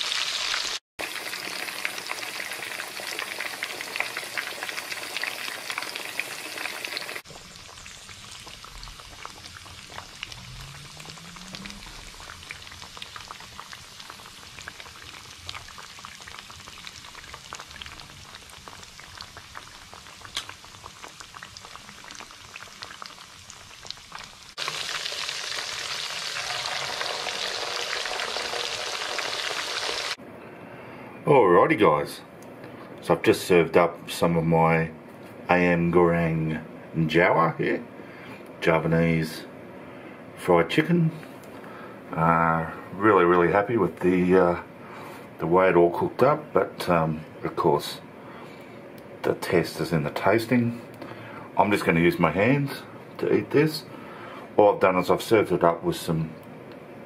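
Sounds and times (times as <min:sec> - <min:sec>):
chicken sizzling in hot oil: 0:00.0 - 0:30.2.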